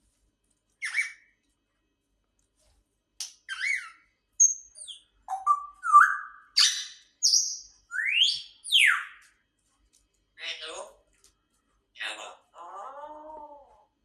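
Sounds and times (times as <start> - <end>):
parrot whistles chirps and clicks: 0.8 - 1.3, 3.2 - 9.3.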